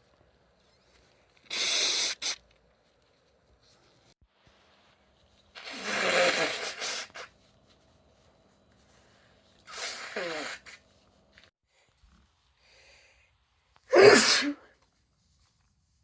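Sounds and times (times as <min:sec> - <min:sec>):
woman sneezing: 0:13.9 - 0:14.7.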